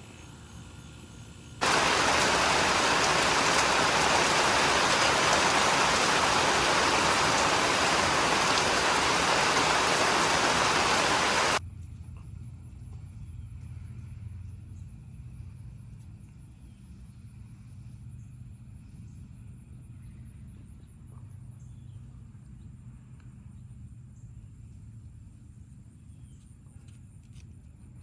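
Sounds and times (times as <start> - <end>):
heavy rain downpour: 1.6 - 11.6.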